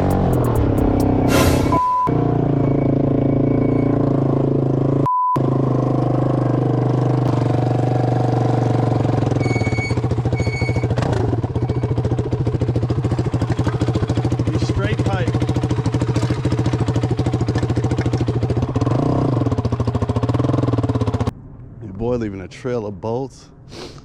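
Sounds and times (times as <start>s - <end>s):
short beep: 1.2s - 4.0s, 9.4s - 10.8s
quad engine running and idling: 2.1s - 21.3s.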